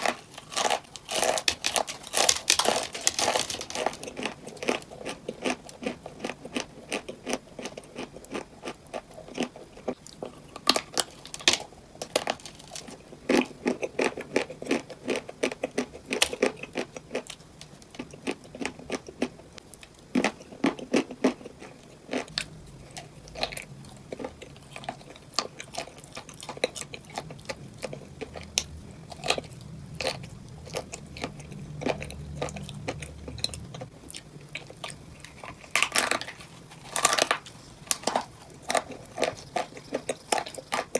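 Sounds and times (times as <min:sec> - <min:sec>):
crunchy chewing: 0:00.0 - 0:40.9
low hum: 0:27.4 - 0:39.0.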